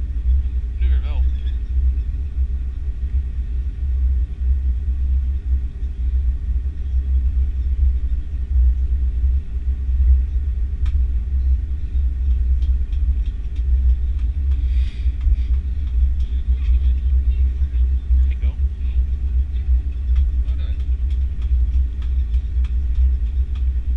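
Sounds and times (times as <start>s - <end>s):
aircraft cabin low rumble: 0.0s - 23.9s.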